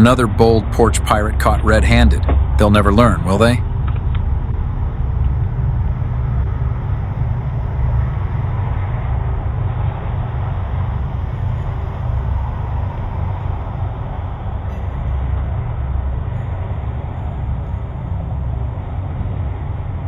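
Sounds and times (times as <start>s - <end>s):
low rumble of street noise: 0.0s - 20.0s.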